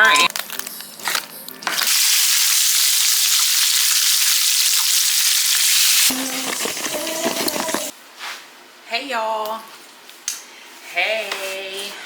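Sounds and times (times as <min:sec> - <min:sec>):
food sizzling in hot oil: 0:01.8 - 0:07.1.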